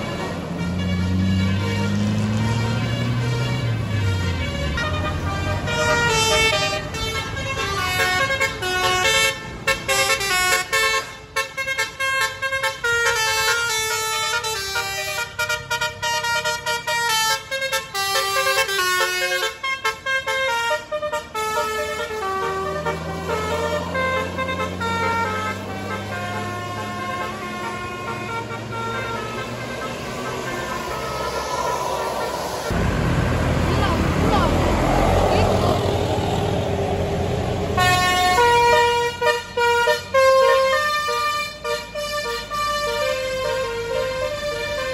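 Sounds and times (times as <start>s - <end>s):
multi-tone bus horn melody: 0.0s - 33.0s, 37.6s - 44.9s
diesel engine drone: 20.4s - 44.9s.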